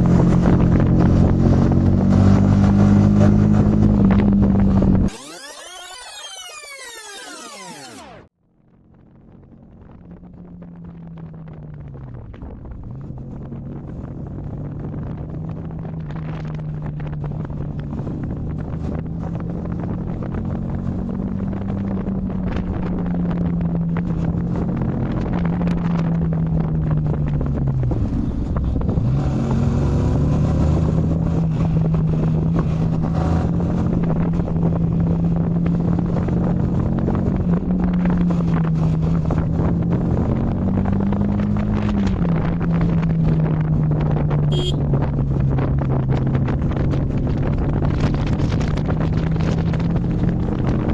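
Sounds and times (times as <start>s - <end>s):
wind noise on microphone: 0.0s - 5.1s, 8.6s - 50.9s
motorcycle engine running: 41.2s - 50.9s.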